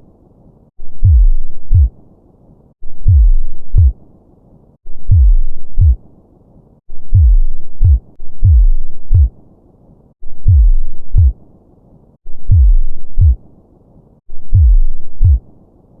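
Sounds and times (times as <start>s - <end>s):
heartbeat thumps: 0.9s - 1.9s, 2.9s - 4.0s, 4.9s - 6.0s, 6.9s - 9.3s, 10.3s - 11.4s, 12.3s - 13.4s, 14.3s - 15.4s.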